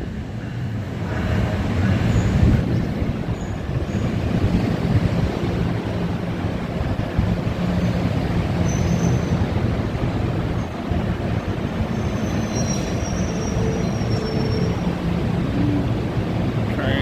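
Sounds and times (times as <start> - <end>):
train rumbling: 0.0 - 17.0.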